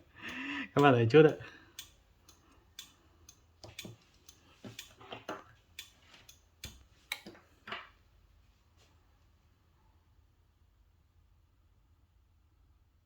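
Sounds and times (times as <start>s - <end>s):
small clicks and knocks: 0.8s - 8.0s.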